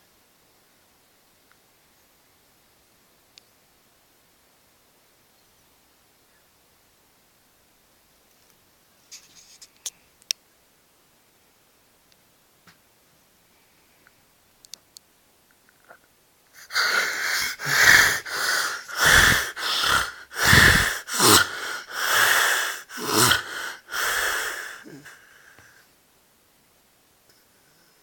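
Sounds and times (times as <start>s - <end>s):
loud rasping snoring: 16.6s - 25.1s.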